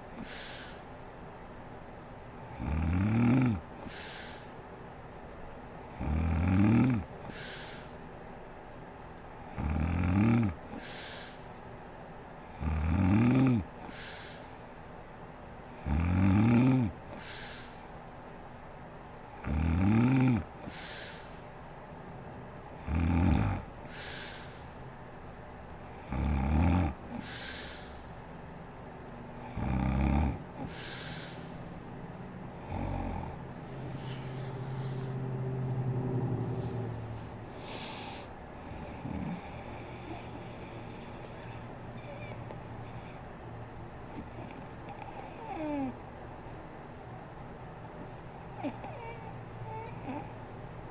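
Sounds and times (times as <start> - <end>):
woman snoring: 2.5 - 4.4, 6.0 - 7.8, 9.6 - 11.4, 12.6 - 14.3, 15.8 - 17.7, 19.4 - 21.3, 22.8 - 24.7, 26.0 - 28.1, 29.5 - 31.6, 32.6 - 36.9, 37.6 - 43.2, 44.2 - 46.0, 48.4 - 50.4.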